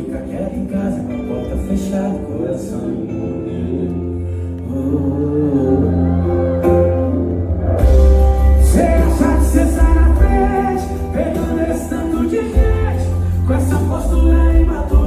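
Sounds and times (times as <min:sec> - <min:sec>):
heavy bass: 0:05.1 - 0:15.0
man singing over car stereo: 0:08.6 - 0:15.0.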